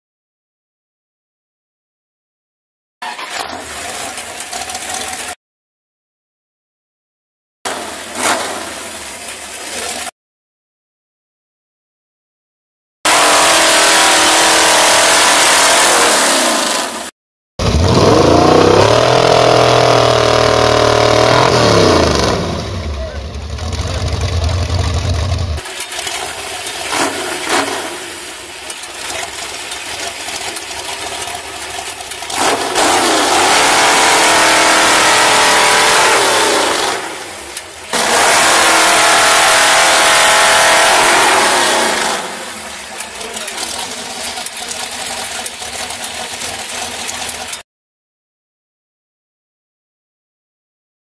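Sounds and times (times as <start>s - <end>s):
chainsaw engine revving: 3.0s - 5.2s, 7.7s - 8.9s, 13.1s - 23.0s, 23.8s - 28.3s, 32.2s - 44.4s.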